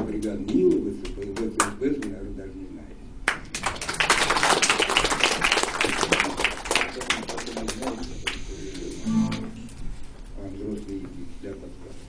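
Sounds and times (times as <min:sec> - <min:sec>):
audience applauding: 0:03.5 - 0:08.4.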